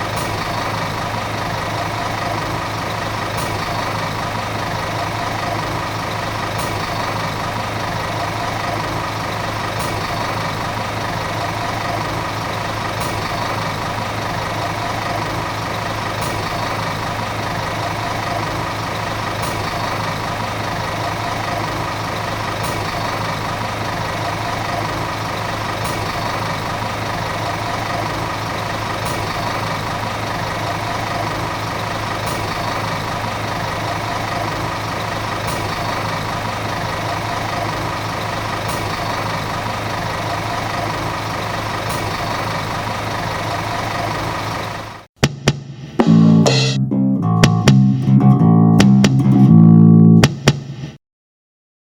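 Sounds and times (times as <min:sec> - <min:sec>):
bus diesel engine running: 0:00.0 - 0:45.1, 0:46.0 - 0:50.3.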